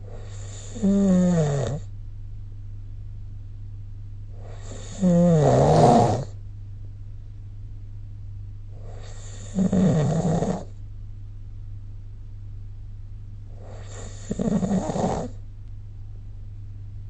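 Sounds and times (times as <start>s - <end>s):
person snoring: 0.1s - 1.9s, 4.4s - 6.4s, 8.8s - 10.7s, 13.6s - 15.4s
faint breath: 13.5s - 14.4s.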